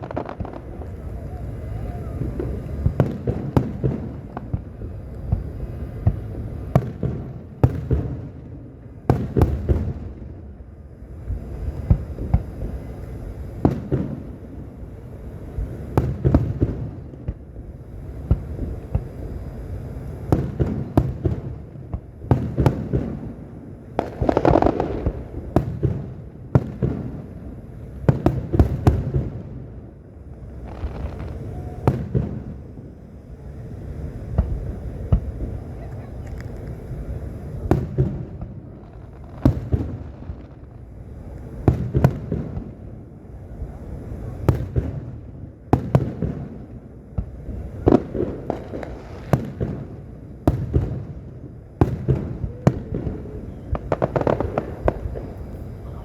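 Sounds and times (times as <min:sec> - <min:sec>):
low rumble of distant explosions: 0:00.0 - 0:56.0
fireworks shells bursting: 0:30.3 - 0:33.1, 0:47.2 - 0:56.0.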